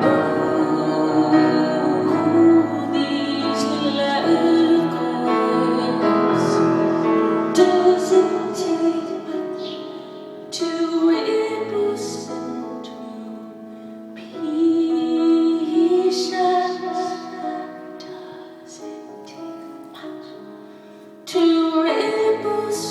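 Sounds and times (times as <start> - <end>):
piano: 0.0 - 22.9.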